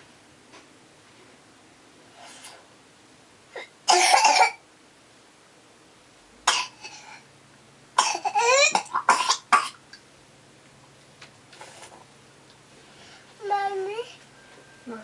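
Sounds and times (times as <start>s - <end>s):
young child coughing: 3.6s - 4.6s, 6.5s - 6.9s, 8.0s - 9.8s.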